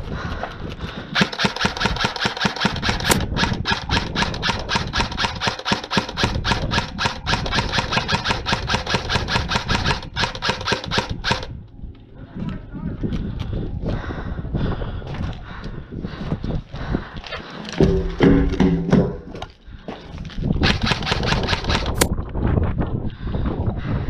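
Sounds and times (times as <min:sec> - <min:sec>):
airsoft gun rapid firing: 0:01.2 - 0:11.5, 0:20.6 - 0:22.1.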